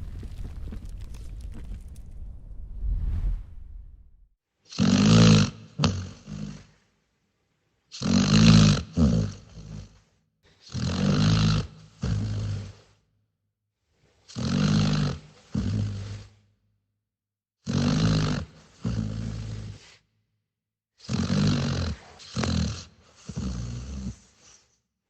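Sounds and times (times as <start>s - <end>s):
dog snoring: 7.9s - 10.1s, 10.7s - 13.0s, 14.3s - 16.4s, 17.6s - 20.0s, 21.0s - 24.7s.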